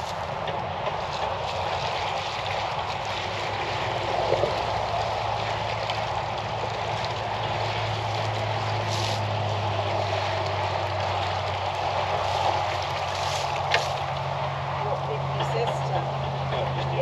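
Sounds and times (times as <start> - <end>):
water pouring into hole: 0.0 - 15.4
engine humming: 0.0 - 17.0.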